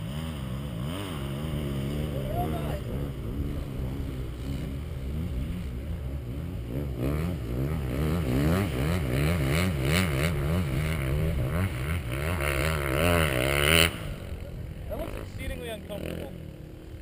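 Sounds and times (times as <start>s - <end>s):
truck engine revving: 0.0s - 16.4s.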